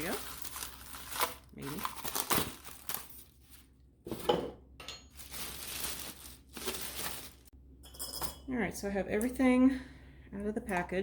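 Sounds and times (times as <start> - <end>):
packaging rustling: 0.0 - 3.7, 5.2 - 7.5.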